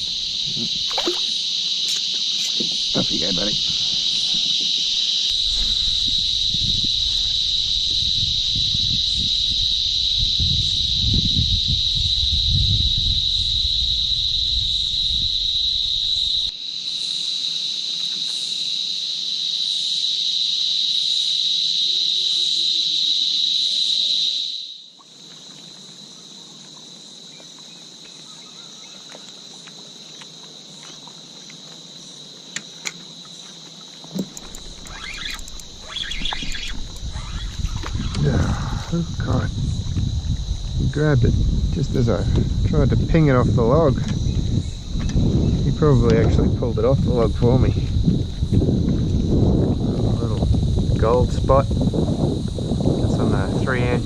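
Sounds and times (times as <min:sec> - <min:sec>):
insects buzzing: 0:00.0 - 0:54.0
sharp clicks: 0:34.1 - 0:37.1.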